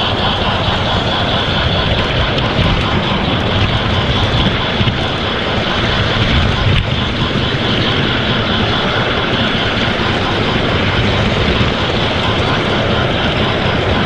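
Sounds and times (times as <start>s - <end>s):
large vehicle engine rumble: 0.0s - 14.0s.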